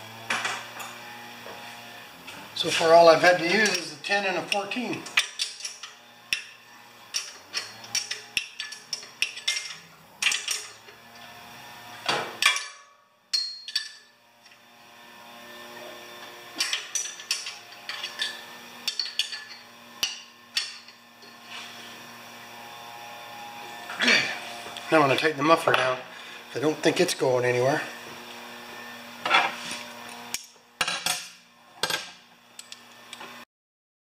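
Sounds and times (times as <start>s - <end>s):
steel hand tools clinking: 2.6s - 6.5s, 7.1s - 10.9s, 12.4s - 14.1s, 16.6s - 21.4s.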